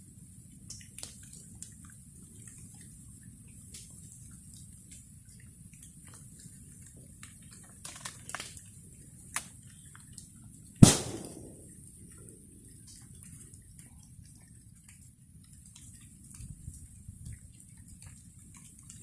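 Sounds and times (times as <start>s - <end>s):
small crackles of fire: 0.0s - 19.0s
loud sharp pop of burning wood: 10.8s - 11.9s.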